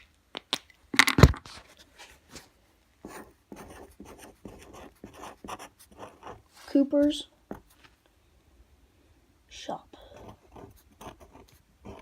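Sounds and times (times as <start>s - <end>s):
pen scratching on paper: 3.0s - 6.5s, 10.1s - 12.0s.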